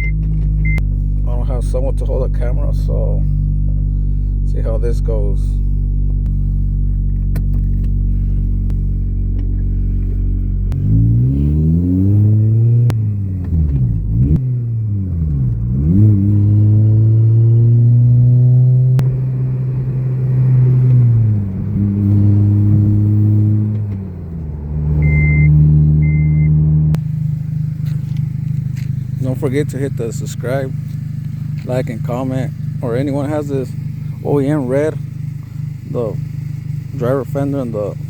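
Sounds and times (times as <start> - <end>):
short high beeps: 0.0 - 0.8, 25.0 - 26.6
car engine revving through gears: 6.0 - 38.0.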